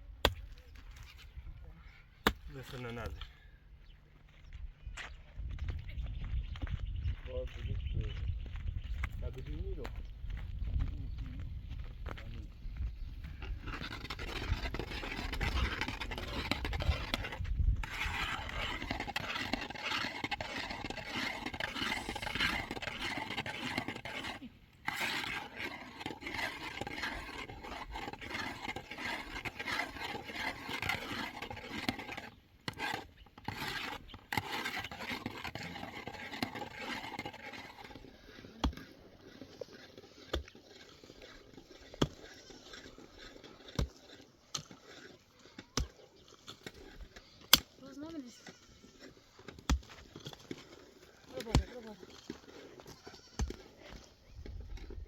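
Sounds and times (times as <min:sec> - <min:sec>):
rough rasping scraping: 0:13.1 - 0:55.0.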